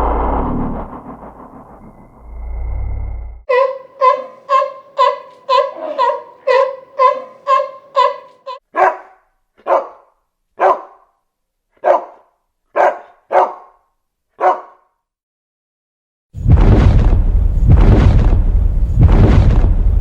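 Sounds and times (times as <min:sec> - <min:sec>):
loud low rumble: 0:00.0 - 0:03.5, 0:16.4 - 0:20.0
dog yipping: 0:03.5 - 0:11.0, 0:12.8 - 0:13.7, 0:14.4 - 0:14.8
dog barking: 0:03.5 - 0:11.2, 0:11.8 - 0:14.9.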